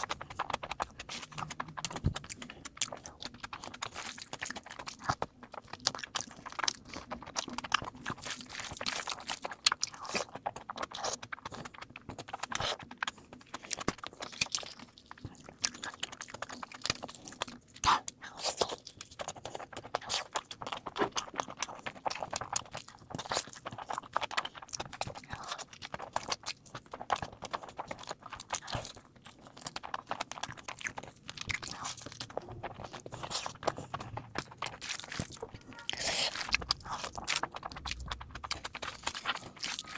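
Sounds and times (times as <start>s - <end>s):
crunching and chewing: 0.0s - 39.9s.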